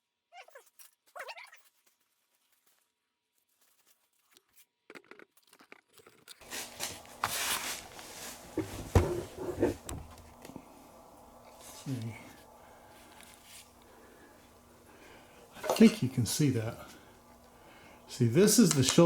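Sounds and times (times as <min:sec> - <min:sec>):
objects handled on a workbench: 0:06.4 - 0:10.7.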